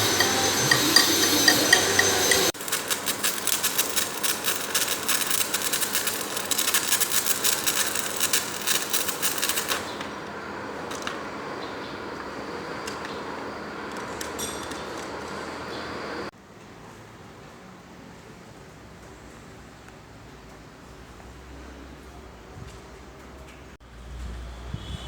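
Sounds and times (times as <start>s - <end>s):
loud machine noise: 0.0s - 10.3s
steady background noise: 0.0s - 25.0s
rapid crackling clicks: 0.7s - 10.1s.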